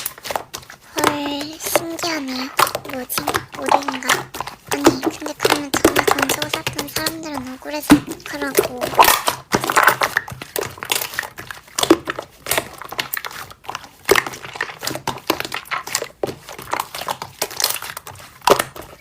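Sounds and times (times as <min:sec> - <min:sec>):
slime squeezed by hand: 0:00.0 - 0:19.0.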